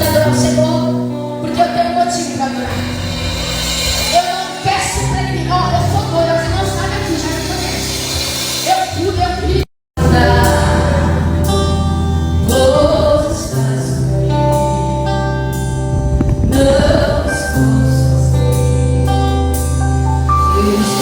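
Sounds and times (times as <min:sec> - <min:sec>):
music with singing: 0:00.0 - 0:21.0
long held bass notes: 0:02.4 - 0:08.3, 0:10.0 - 0:21.0.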